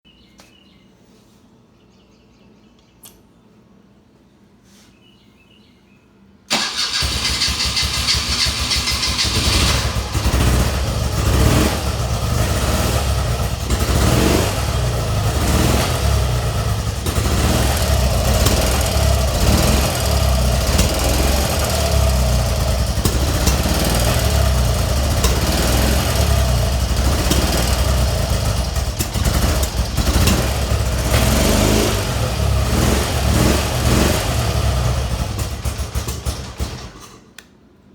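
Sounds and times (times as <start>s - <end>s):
motorcycle engine popping unevenly: 15.5s - 31.7s.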